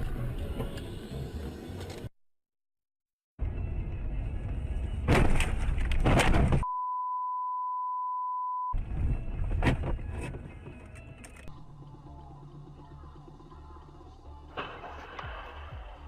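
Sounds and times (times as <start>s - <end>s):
steady beep tone: 6.6s - 8.8s.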